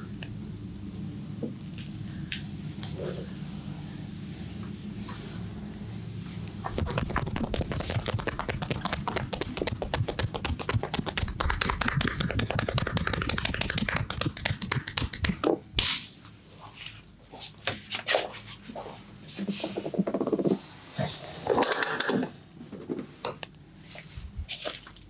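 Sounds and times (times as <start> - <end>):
hands tapping rhythmically: 6.7 - 15.6.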